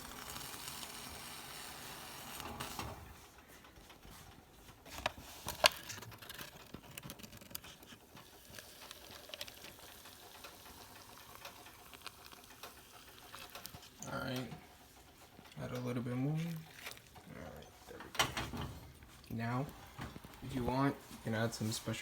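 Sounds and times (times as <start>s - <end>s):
water pouring into a cup: 8.2s - 14.1s.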